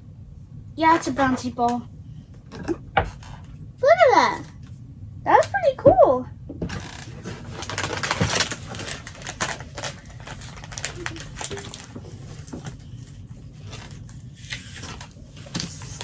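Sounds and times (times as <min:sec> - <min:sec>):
plastic toys and packaging rustling: 0:06.7 - 0:16.0.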